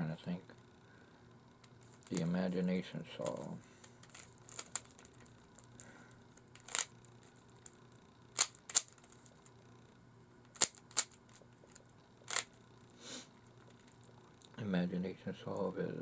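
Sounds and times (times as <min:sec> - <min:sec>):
plastic cube clicks: 0:06.6 - 0:06.9, 0:08.4 - 0:09.1, 0:10.5 - 0:11.2.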